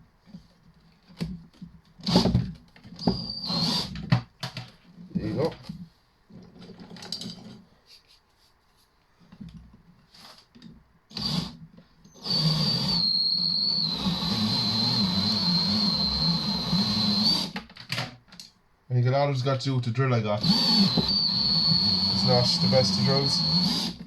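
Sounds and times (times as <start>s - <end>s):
cordless drill whining: 3.0s - 4.0s, 11.1s - 17.6s, 20.4s - 24.0s.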